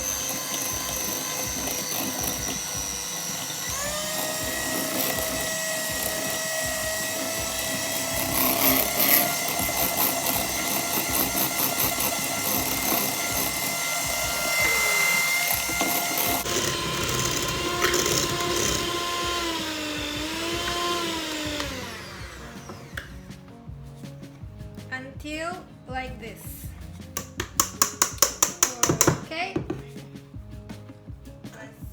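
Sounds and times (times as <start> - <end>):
electric mixer whining: 0.0 - 23.4.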